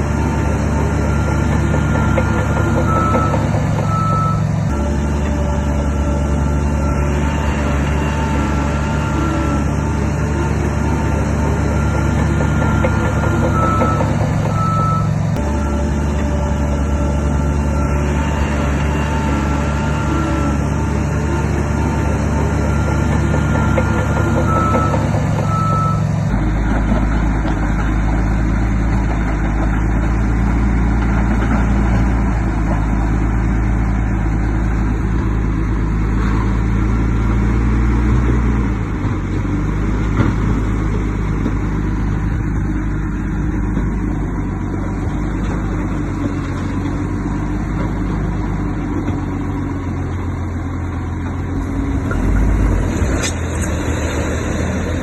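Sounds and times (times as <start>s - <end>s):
heavy diesel machinery running: 0.0s - 55.0s
reversing alarm beeping: 0.8s - 9.8s, 11.1s - 20.7s, 21.9s - 26.2s.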